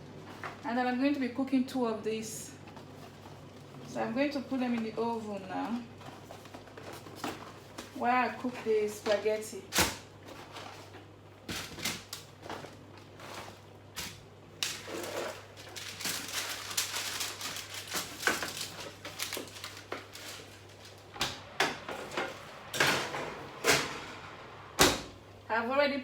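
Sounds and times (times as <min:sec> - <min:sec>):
rustling: 0:14.7 - 0:21.1.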